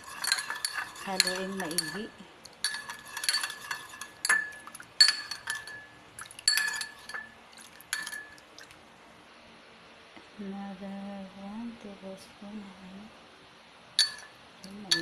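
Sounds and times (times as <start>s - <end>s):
spoon scraping and clinking in cup: 0.0s - 7.3s, 7.9s - 8.4s, 14.0s - 14.3s.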